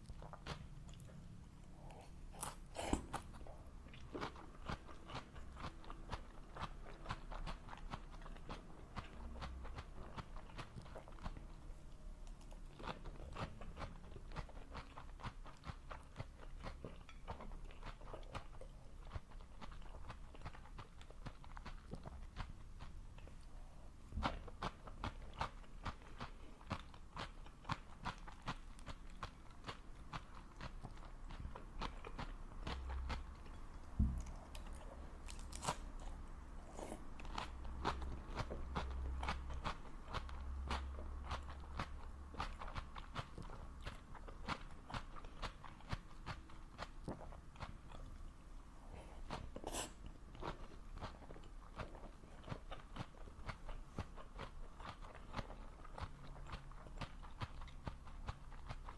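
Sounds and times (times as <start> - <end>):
person chewing food: 0.0 - 58.9
thump: 34.0 - 34.3.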